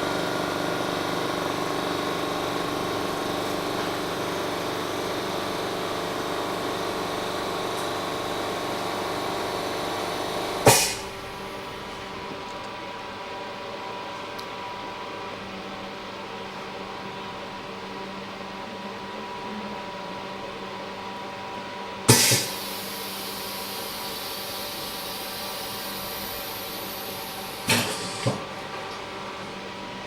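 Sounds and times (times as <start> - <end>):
vacuum pump humming: 0.0 - 13.2, 22.1 - 30.0
loud burst of hiss: 10.6 - 11.2, 22.1 - 28.3.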